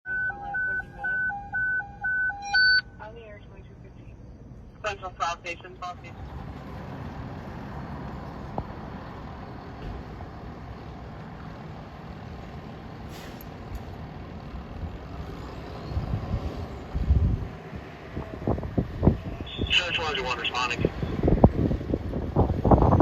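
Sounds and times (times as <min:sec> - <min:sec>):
diesel engine rumbling: 0:00.1 - 0:23.0.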